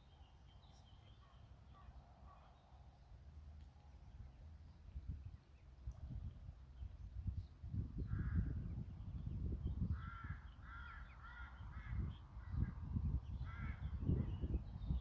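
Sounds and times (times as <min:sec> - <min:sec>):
crow cawing: 0:09.9 - 0:12.1, 0:13.4 - 0:13.8.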